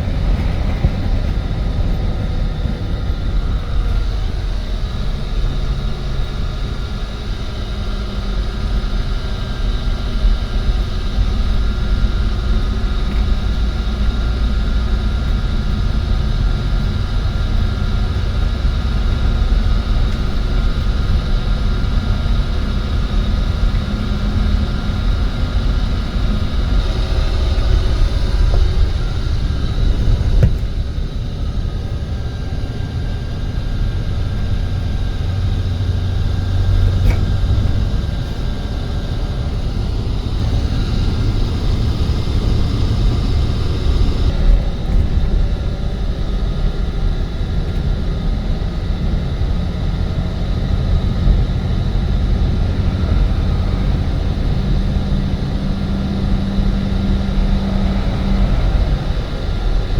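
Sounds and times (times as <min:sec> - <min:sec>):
motor vehicle engine rumble: 0:00.0 - 0:59.9.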